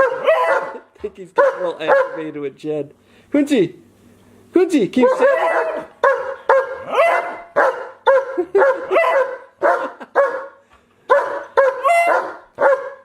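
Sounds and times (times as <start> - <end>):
dog yowling barks: 0.0 - 2.3, 5.0 - 13.0.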